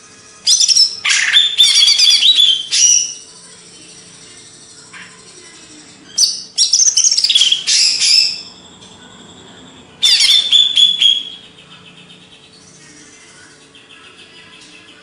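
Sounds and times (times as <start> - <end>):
bird singing whistled notes: 10.0 - 11.5.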